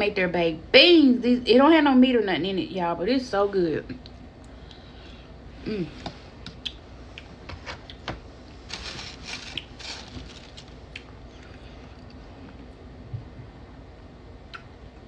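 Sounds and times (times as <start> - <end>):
person humming: 5.6 - 6.1.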